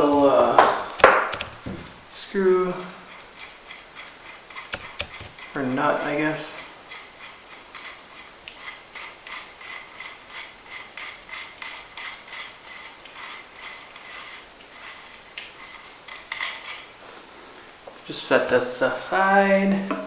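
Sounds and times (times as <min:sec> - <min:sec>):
ratcheting wrench clicking: 0:06.9 - 0:16.9.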